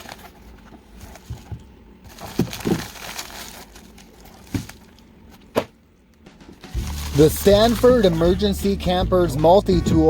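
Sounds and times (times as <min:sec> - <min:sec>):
fabric rustling and crinkling: 0:00.0 - 0:05.0.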